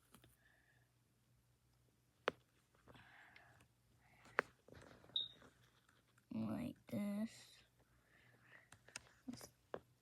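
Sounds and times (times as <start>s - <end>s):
rustling of plastic parts: 4.5s - 6.3s.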